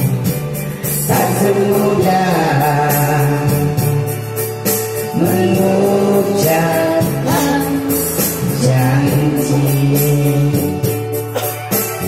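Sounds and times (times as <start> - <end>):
karaoke backing track: 0.0 - 12.0
woman singing: 5.2 - 10.8.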